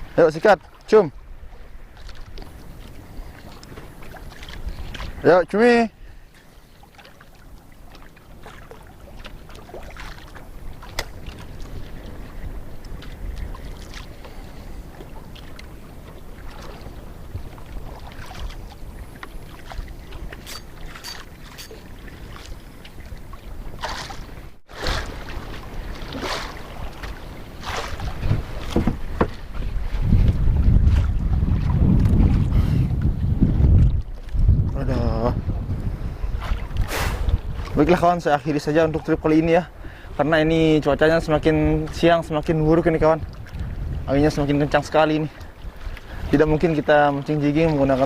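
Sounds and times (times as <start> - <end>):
water lapping against boat: 0.0 - 48.0
wind buffeting microphone: 0.0 - 48.0
light knocks and splashes: 1.9 - 5.2, 6.3 - 32.4.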